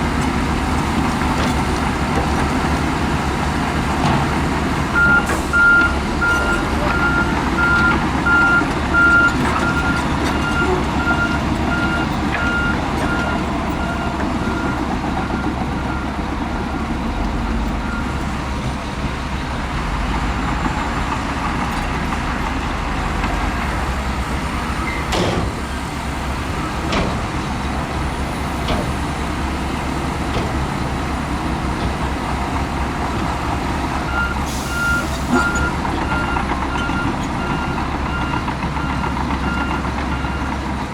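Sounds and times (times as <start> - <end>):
heavy diesel engines running: 0.0 - 40.9
reversing alarm beeping: 5.0 - 18.3, 34.1 - 40.6.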